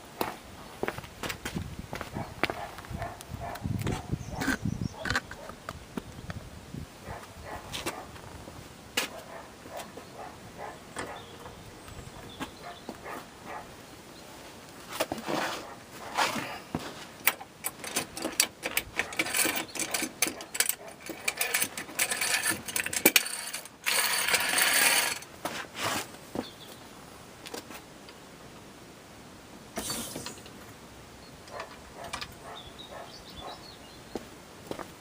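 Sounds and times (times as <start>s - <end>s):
car jack clicking and clattering: 17.2s - 25.3s.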